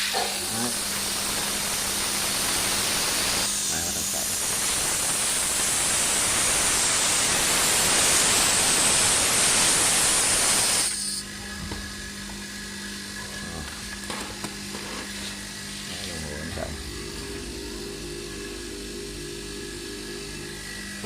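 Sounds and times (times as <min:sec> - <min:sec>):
air escaping hiss: 0:00.0 - 0:11.0
air compressor humming: 0:00.0 - 0:21.0.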